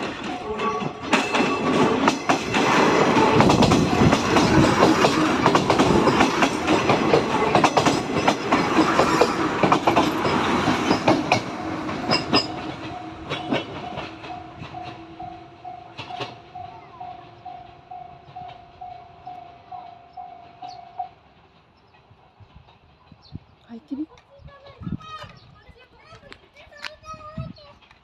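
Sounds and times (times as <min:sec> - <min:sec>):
crossing warning bell: 0:00.0 - 0:21.4
train wheels clacking: 0:00.0 - 0:25.4.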